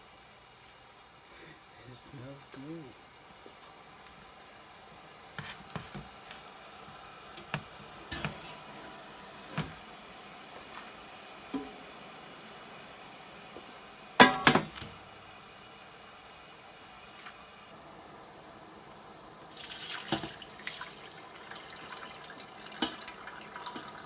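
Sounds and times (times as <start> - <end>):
dishes and utensils clattering: 14.2 - 14.8, 22.6 - 24.0.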